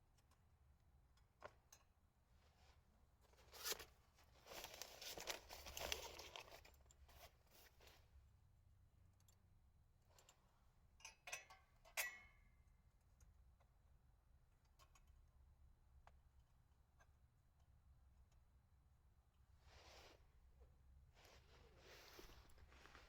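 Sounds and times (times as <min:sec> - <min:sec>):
rustling and crinkling of handling: 0:02.4 - 0:08.2, 0:21.1 - 0:23.0.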